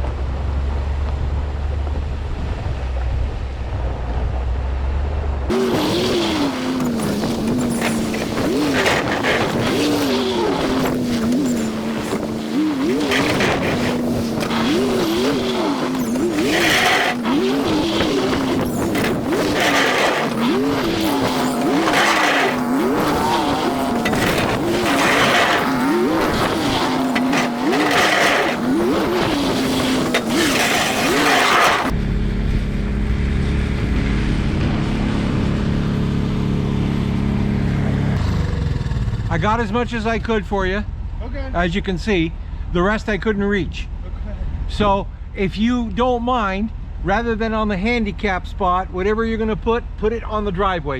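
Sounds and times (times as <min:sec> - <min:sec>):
engine revving: 0:00.0 - 0:40.4
rushing through deep snow: 0:05.5 - 0:31.9.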